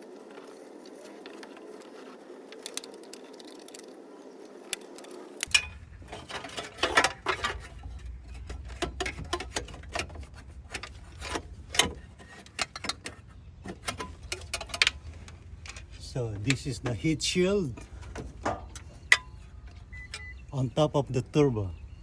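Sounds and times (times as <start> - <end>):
hand tools clicking on metal: 4.7 - 17.9.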